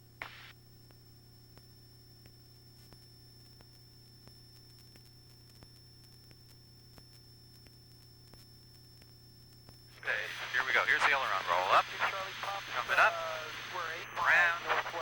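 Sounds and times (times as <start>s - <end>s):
faint electrical hum: 0.0s - 15.0s
thin high whine: 9.7s - 15.0s.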